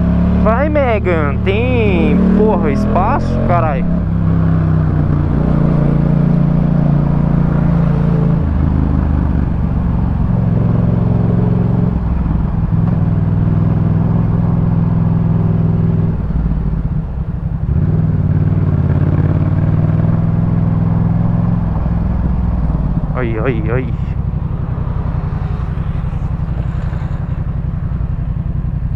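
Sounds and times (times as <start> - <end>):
motorcycle engine under load: 8.4 - 28.9.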